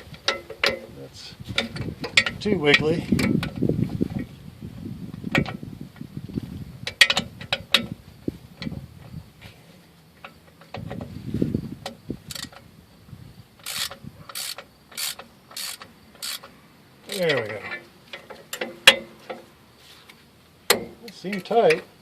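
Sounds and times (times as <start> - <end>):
ratchet bursts: 12.3 - 12.5, 13.6 - 17.5.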